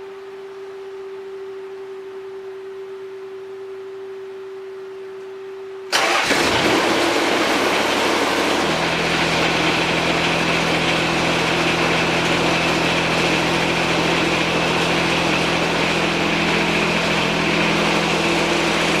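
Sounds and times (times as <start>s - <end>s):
diesel engine running: 5.9s - 19.0s.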